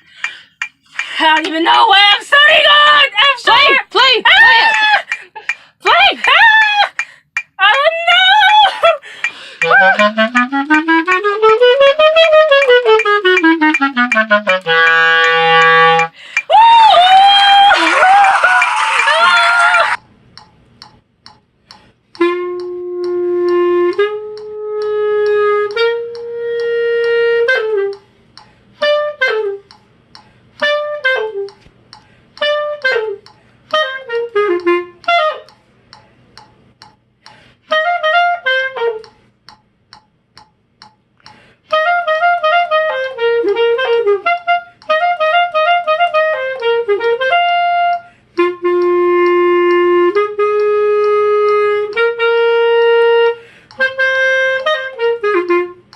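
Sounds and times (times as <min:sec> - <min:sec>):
clarinet playing: 0:09.6 - 0:16.8, 0:22.2 - 0:28.1, 0:28.8 - 0:29.8, 0:30.6 - 0:31.6, 0:32.4 - 0:35.6, 0:37.7 - 0:39.2, 0:41.7 - 0:55.9.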